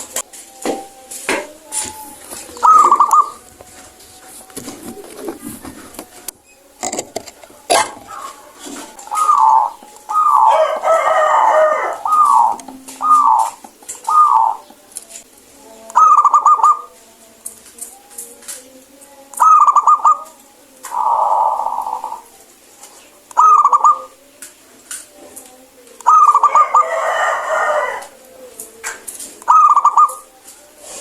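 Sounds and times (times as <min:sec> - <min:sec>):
dove cooing: 0:01.6 - 0:06.3, 0:07.5 - 0:14.9, 0:15.9 - 0:17.0, 0:19.4 - 0:22.4, 0:23.2 - 0:24.3, 0:26.0 - 0:28.2, 0:29.4 - 0:31.0.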